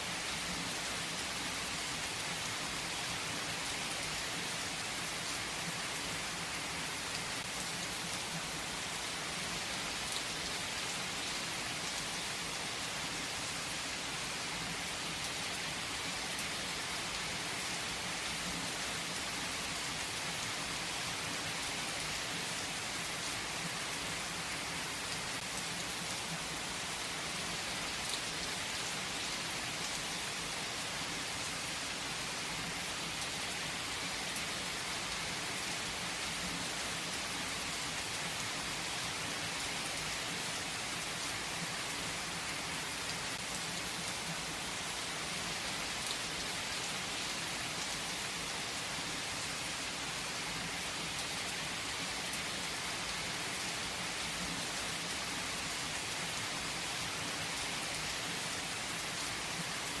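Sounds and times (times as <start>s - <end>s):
heavy rain on foliage: 0.0s - 60.0s.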